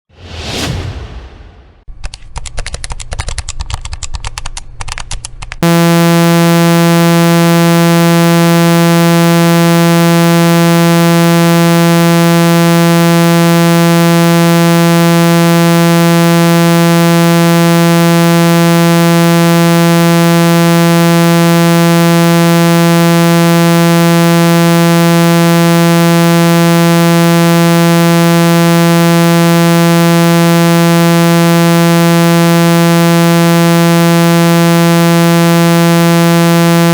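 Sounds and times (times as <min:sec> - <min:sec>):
rapid crackling clicks: 0:02.0 - 0:13.6
low buzzing tone: 0:05.6 - 0:36.9.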